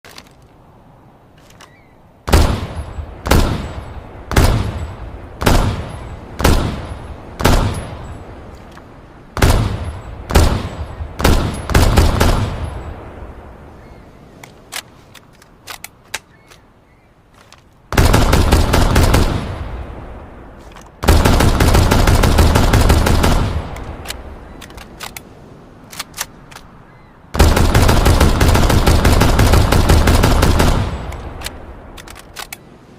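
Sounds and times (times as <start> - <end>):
rifle single shots: 2.3 - 8.2, 9.3 - 13.2, 17.9 - 19.8, 20.7 - 25.2, 27.4 - 32.5
faint clicks: 14.4 - 16.7, 23.7 - 26.8, 31.0 - 32.7
automatic rifle fire: 21.0 - 23.7, 27.4 - 31.2.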